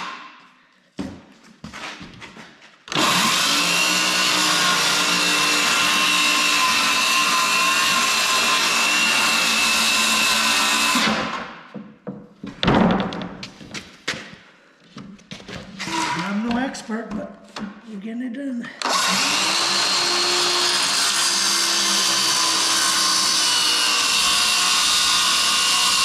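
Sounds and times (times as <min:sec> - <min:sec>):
electric power tool running: 0:02.9 - 0:11.4, 0:18.8 - 0:26.0
knocks: 0:11.7 - 0:14.4.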